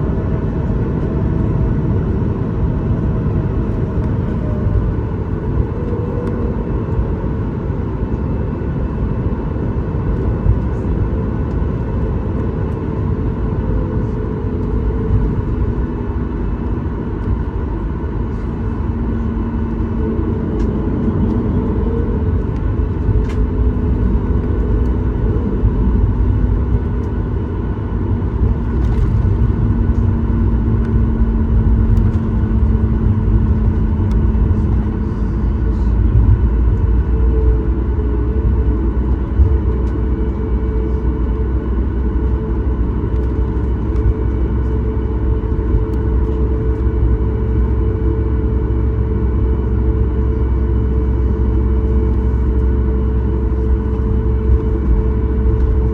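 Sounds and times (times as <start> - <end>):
aircraft engine cabin rumble: 0.0 - 55.9.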